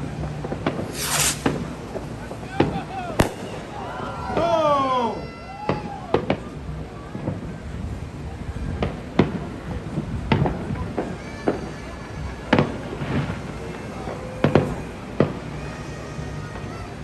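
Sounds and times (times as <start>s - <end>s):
fireworks banging: 0.5s - 4.4s.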